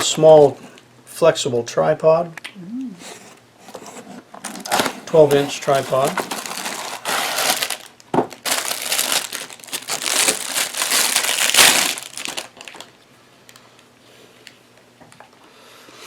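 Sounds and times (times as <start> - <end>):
packaging crinkling: 4.4 - 13.6.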